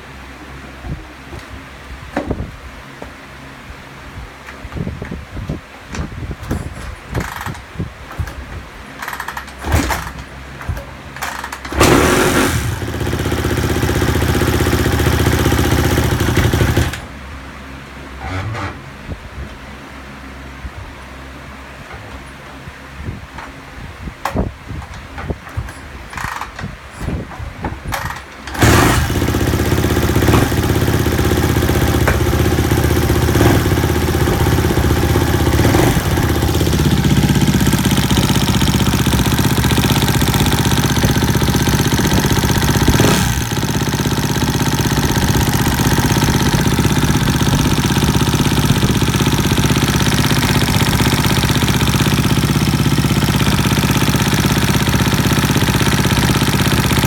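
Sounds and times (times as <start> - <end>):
engine knocks: 5.9 - 17.2, 24.2 - 57.0
motorcycle engine idling with ticking: 6.4 - 17.1, 27.8 - 57.0.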